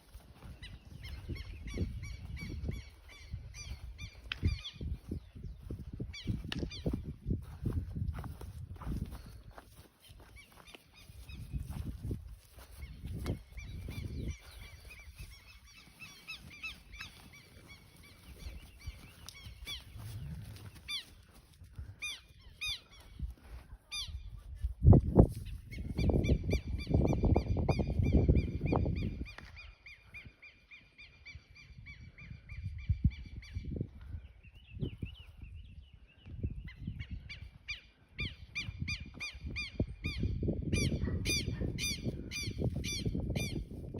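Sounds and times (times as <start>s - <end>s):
birds chirping: 0.0s - 7.3s, 8.2s - 23.4s.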